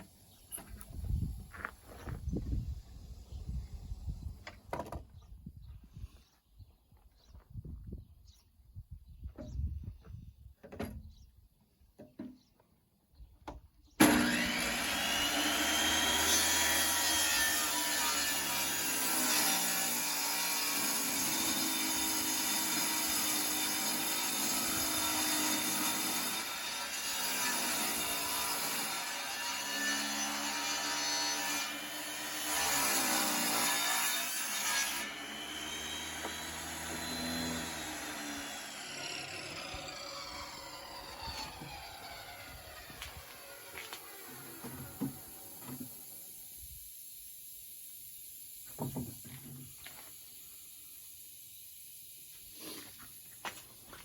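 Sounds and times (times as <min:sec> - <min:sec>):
saw blade winding down: 0:14.0 - 0:29.0, 0:34.6 - 0:46.4
table saw ripping a board: 0:14.0 - 0:45.9.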